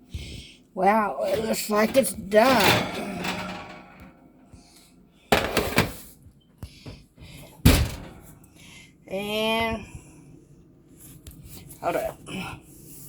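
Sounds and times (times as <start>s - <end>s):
kitchen clatter: 1.2s - 4.4s, 5.3s - 6.1s, 7.7s - 8.4s
loud thunk: 7.7s - 8.2s.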